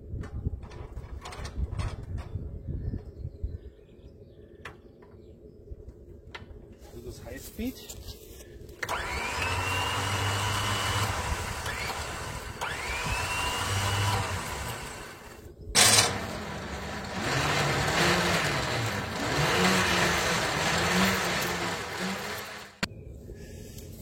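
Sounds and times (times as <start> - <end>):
electric winch motor whining: 8.8 - 22.9.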